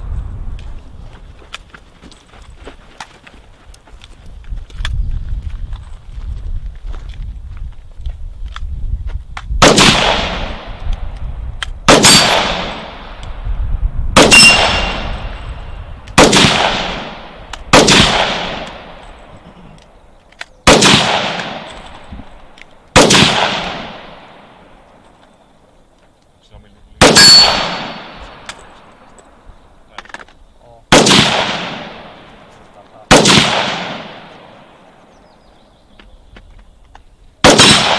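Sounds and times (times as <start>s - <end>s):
gunshots with echo: 9.6s - 10.8s, 11.8s - 13.2s, 14.2s - 19.2s, 20.6s - 22.1s, 22.9s - 24.7s, 27.0s - 28.5s, 30.9s - 35.0s, 37.4s - 37.9s.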